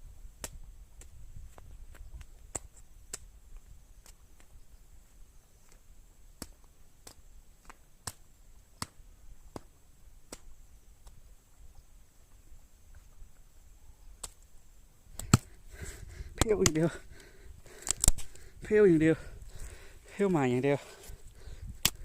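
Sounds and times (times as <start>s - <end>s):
faint sharp clicks: 10.3s - 11.2s, 15.1s - 18.5s, 21.8s - 22.0s.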